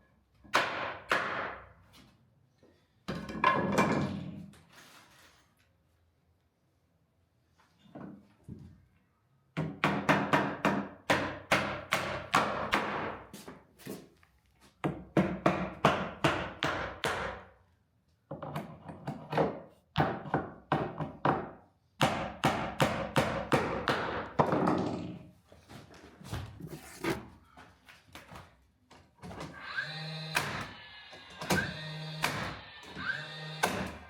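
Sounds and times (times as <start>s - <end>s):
hammer nailing wooden boards: 0.5s - 1.7s, 9.6s - 13.3s, 14.8s - 17.5s, 18.5s - 25.0s, 31.4s - 32.6s, 33.6s - 34.0s.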